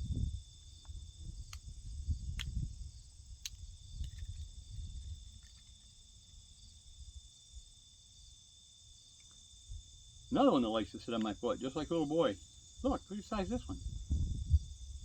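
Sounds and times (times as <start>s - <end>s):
crickets droning: 0.0s - 15.0s.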